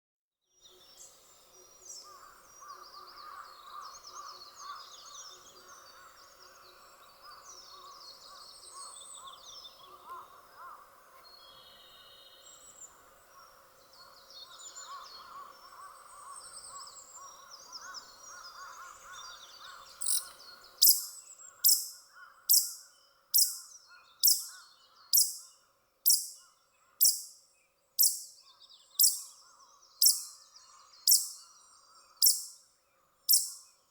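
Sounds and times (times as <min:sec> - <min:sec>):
small birds chirping: 0:00.6 - 0:33.9
pika high-pitched calls: 0:19.6 - 0:27.4, 0:28.0 - 0:28.4, 0:29.0 - 0:29.4, 0:30.0 - 0:32.6, 0:33.3 - 0:33.7.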